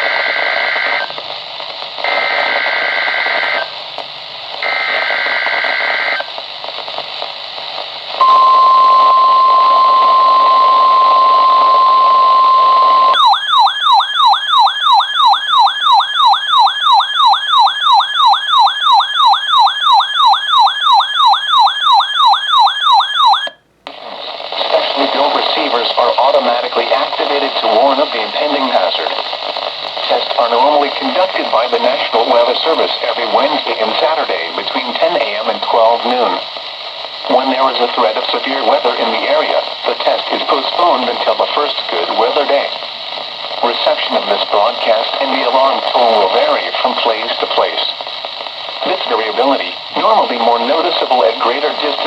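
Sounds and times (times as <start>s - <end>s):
steady warning alarm tone: 8.2s - 23.6s
warbling electronic alarm: 8.2s - 23.6s.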